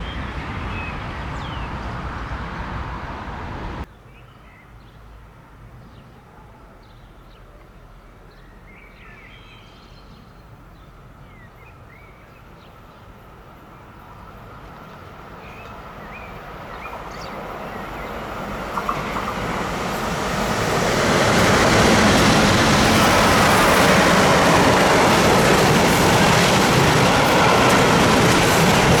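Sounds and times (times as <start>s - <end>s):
birds chirping: 0.0s - 3.9s, 14.8s - 29.0s
train running: 0.0s - 3.9s, 13.2s - 29.0s
train wheels rushing on rails: 0.0s - 3.9s, 13.9s - 29.0s.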